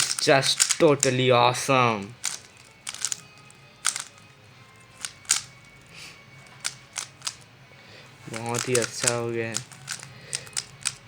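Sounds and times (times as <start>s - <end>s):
puzzle cube layers clicking: 0.0s - 1.2s, 2.1s - 5.9s, 6.5s - 7.4s, 8.3s - 11.0s.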